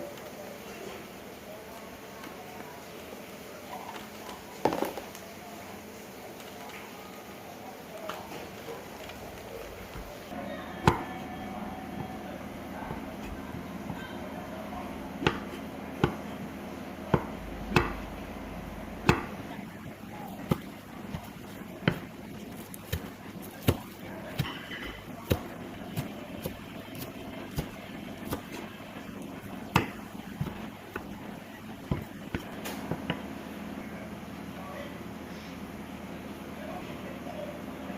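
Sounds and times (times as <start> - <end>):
low background hum: 0.0 - 37.9
knife chopping on cutting board: 15.2 - 16.4, 17.1 - 18.0, 19.0 - 19.4, 20.4 - 28.7, 29.7 - 31.2.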